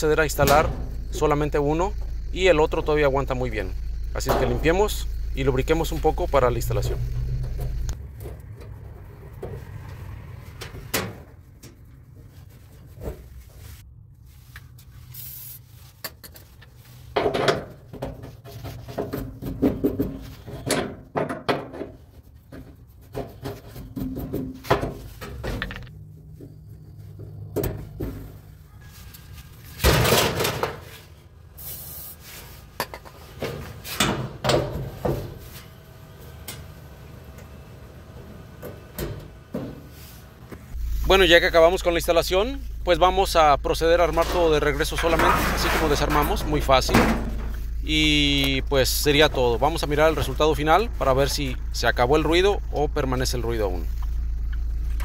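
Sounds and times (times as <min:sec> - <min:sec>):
clicks and knocks of handling parts: 0:16.0 - 0:28.4.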